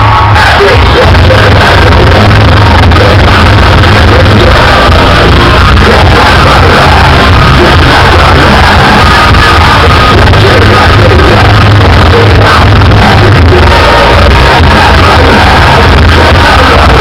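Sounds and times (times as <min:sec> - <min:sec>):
distorted guitars: 0:00.0 - 0:17.0
pounding drums: 0:00.0 - 0:17.0
shouted vocals: 0:00.0 - 0:17.0.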